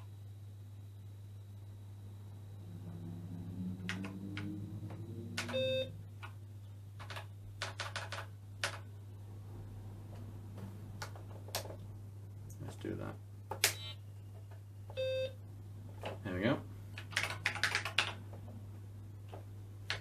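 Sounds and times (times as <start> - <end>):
steady low hum: 0.0 - 17.2, 17.8 - 20.0
short computer beep: 5.5 - 6.0
keyboard keys clicking: 7.0 - 8.8, 17.0 - 18.2.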